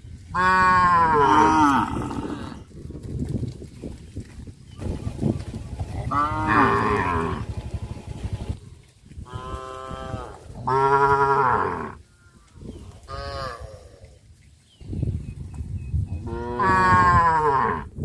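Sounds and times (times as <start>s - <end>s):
cattle mooing: 0.4s - 2.6s, 5.8s - 7.8s, 9.3s - 12.0s.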